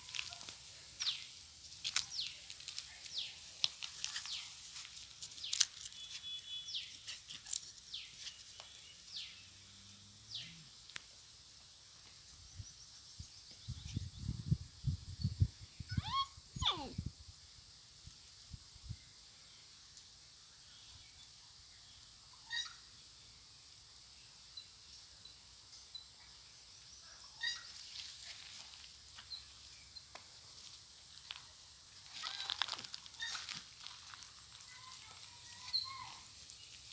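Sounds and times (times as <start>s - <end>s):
small birds chirping: 0.0s - 9.6s
puppies squeaking: 15.9s - 17.0s
puppy whimper: 15.9s - 17.0s.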